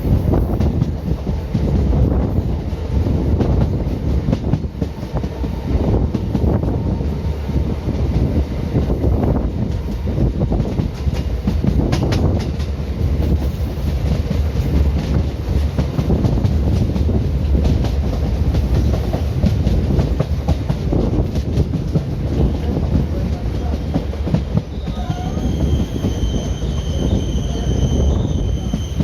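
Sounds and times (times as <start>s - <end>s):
train carriage rumbling: 0.0s - 29.0s
high-pitched wheel squeal: 24.7s - 29.0s.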